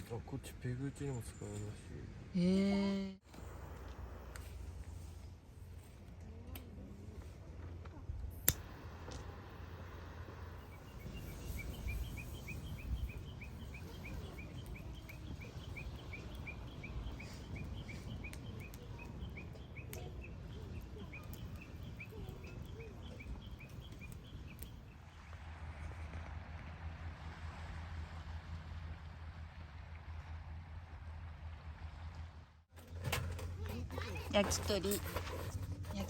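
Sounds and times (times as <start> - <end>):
low outdoor rumble: 0.0 - 36.0
bird chirping: 10.4 - 25.2.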